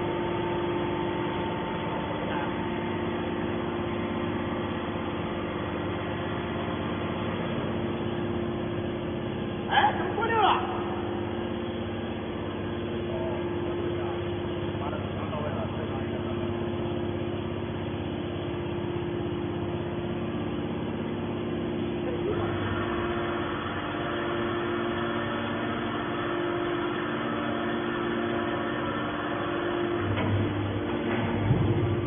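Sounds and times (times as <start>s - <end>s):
baler pump motor drone: 0.0s - 32.0s.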